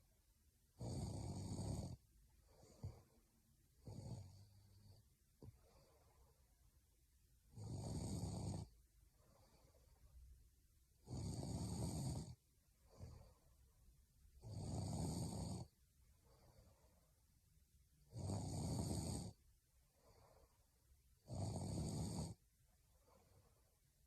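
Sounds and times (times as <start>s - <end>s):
woman snoring: 0.8s - 2.0s, 3.8s - 5.0s, 7.5s - 8.7s, 11.0s - 13.3s, 14.4s - 15.7s, 18.1s - 19.4s, 21.2s - 22.4s
faint breathing: 2.3s - 3.4s, 4.2s - 6.6s, 9.0s - 10.4s, 12.7s - 14.0s, 16.0s - 17.3s, 19.3s - 21.0s, 22.8s - 24.0s.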